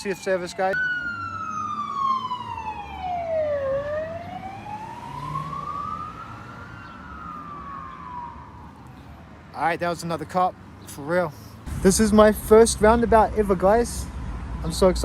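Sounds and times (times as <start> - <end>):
police siren wailing: 0.0 - 9.0
low traffic rumble: 0.0 - 15.0.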